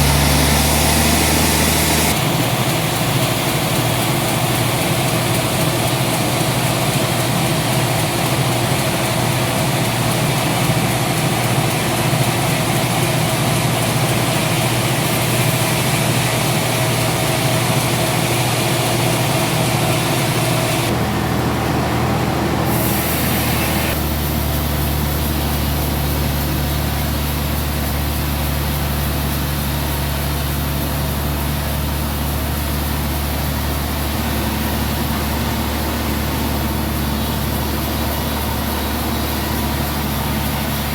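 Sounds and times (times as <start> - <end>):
high hiss: 0.0 - 21.0, 22.6 - 40.9
sawmill saw running: 0.0 - 40.9
deep steady hum: 20.8 - 40.9.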